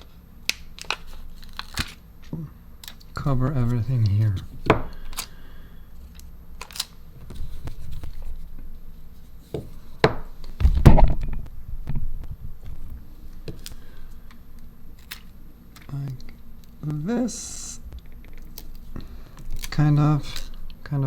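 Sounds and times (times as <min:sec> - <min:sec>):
bump and rustle: 0:10.6 - 0:12.9.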